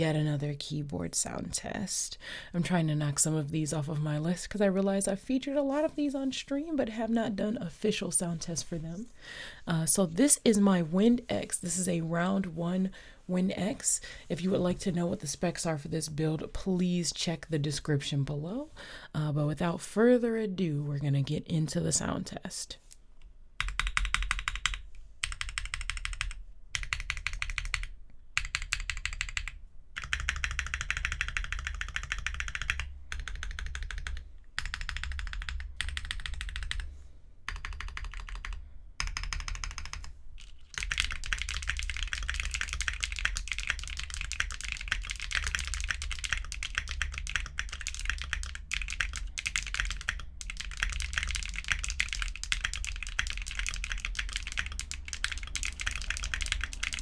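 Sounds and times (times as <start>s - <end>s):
typing on mechanical keyboard: 23.6s - 36.9s, 37.5s - 57.0s.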